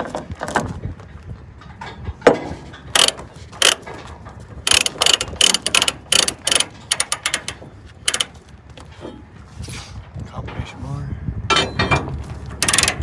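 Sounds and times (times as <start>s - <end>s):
ratchet binder pawl clicking: 2.9s - 3.9s, 4.6s - 8.4s, 12.6s - 13.0s.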